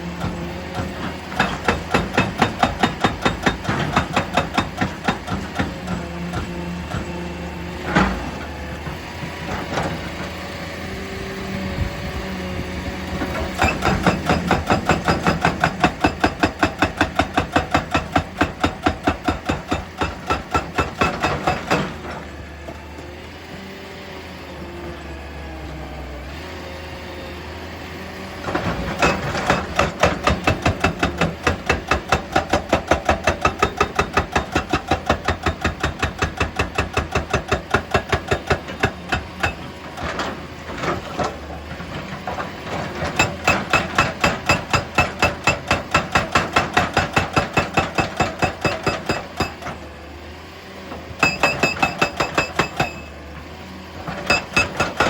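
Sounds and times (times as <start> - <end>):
engine hum: 0.0 - 55.0
rapid mechanical hammer blows: 29.0 - 39.7, 43.2 - 49.7, 51.2 - 53.1, 54.2 - 55.0.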